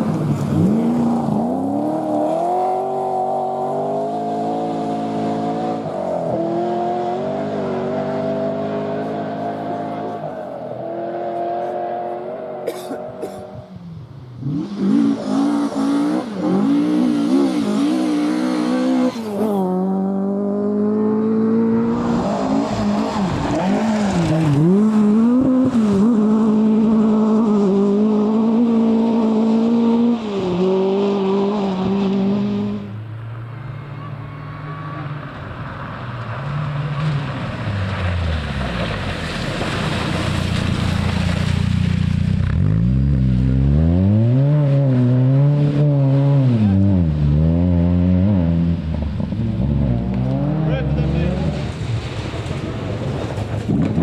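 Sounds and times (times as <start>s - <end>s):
rally car engines revving: 0.0s - 54.0s
deeper engine revving: 14.3s - 54.0s
tyres hissing on gravel: 38.6s - 42.1s.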